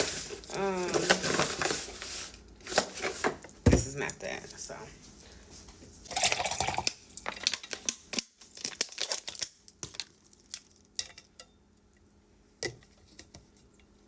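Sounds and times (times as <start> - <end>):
plastic packaging rustling and crinkling: 0.0 - 4.7, 6.0 - 10.9.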